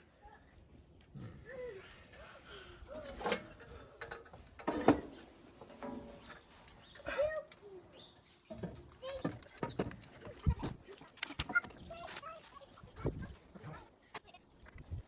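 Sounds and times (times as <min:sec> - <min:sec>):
metal tools clanking: 0:02.9 - 0:07.6.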